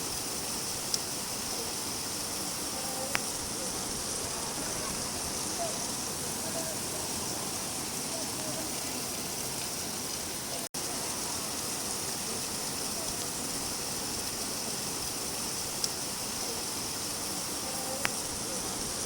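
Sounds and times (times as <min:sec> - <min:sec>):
faint drip-like ticks: 0:00.0 - 0:03.8, 0:08.1 - 0:19.0
steady rain falling: 0:00.0 - 0:19.0.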